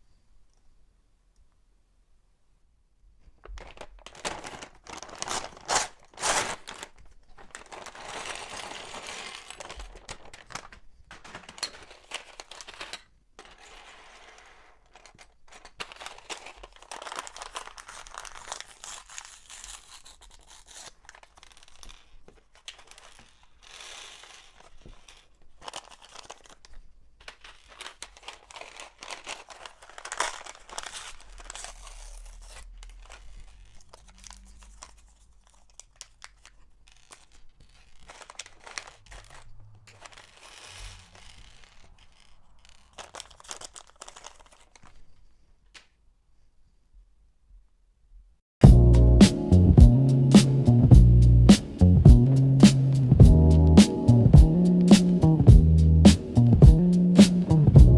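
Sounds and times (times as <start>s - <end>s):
plastic bags tearing and crinkling: 3.4s - 45.1s.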